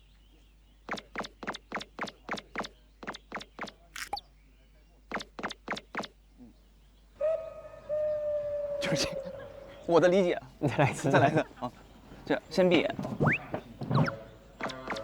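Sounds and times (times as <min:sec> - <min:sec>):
sharp clicks: 0:00.9 - 0:04.2, 0:05.1 - 0:06.2, 0:14.0 - 0:15.0.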